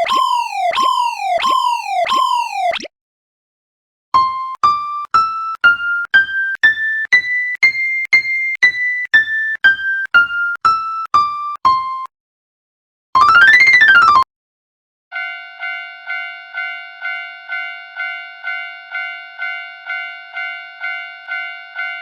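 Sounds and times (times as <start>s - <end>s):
rising-and-falling electronic sweep: 0.0s - 2.9s.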